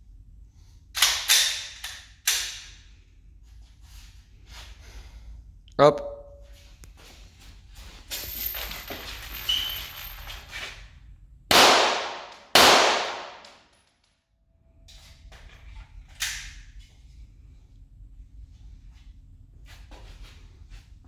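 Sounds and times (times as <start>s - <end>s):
pistol shots echoing: 11.5s - 13.5s.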